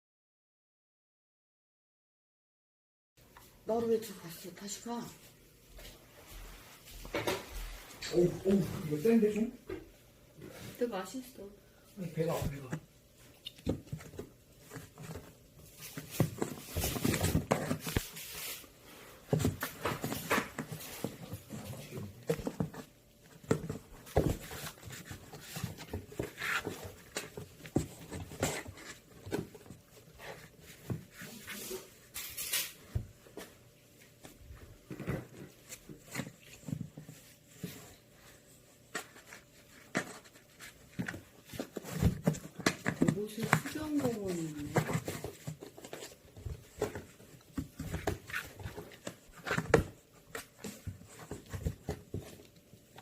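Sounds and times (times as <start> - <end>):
kittens scratching at a box: 13.4 - 33.0, 34.8 - 53.0.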